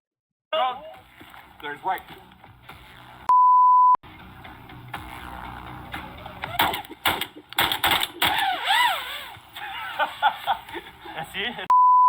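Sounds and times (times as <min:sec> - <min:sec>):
censor bleep: 0:03.3 - 0:04.0, 0:11.7 - 0:12.0.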